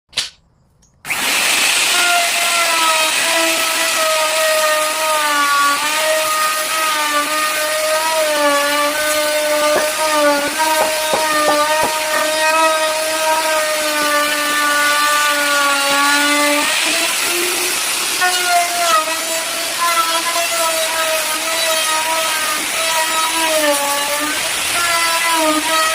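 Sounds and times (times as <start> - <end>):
power tool cutting wood: 1.0 - 25.9
short knocks: 9.6 - 12.3.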